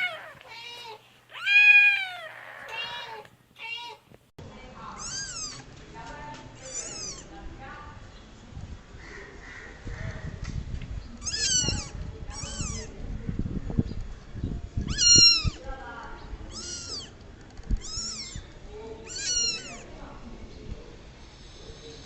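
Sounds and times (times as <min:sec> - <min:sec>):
cat meowing: 0:00.0 - 0:04.0, 0:05.0 - 0:05.6, 0:06.6 - 0:07.2, 0:11.2 - 0:12.9, 0:14.8 - 0:15.6, 0:16.5 - 0:17.1, 0:17.8 - 0:18.4, 0:19.0 - 0:19.9.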